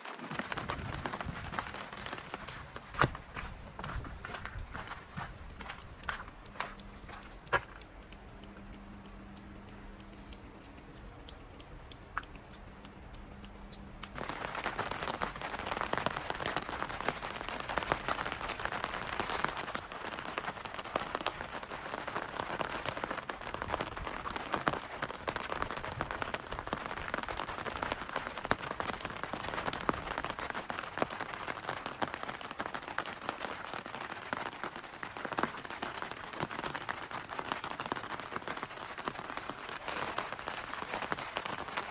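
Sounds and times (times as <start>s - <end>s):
rain falling steadily: 0.0s - 41.9s.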